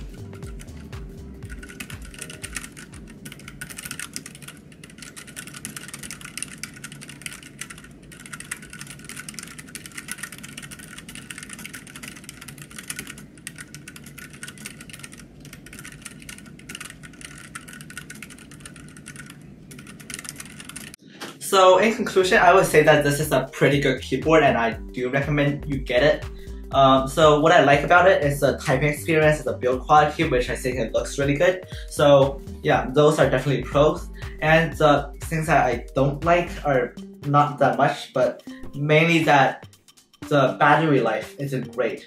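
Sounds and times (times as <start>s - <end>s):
fast typing on mechanical keyboard: 0.0s - 21.0s.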